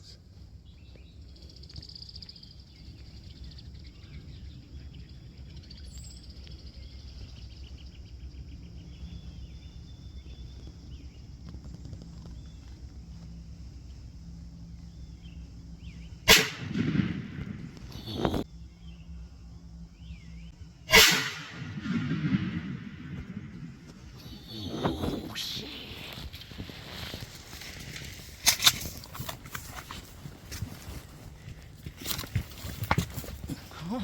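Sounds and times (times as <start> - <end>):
faint birdsong: 0.0 - 34.0
shotgun blast with echo: 16.3 - 18.4, 20.9 - 23.6.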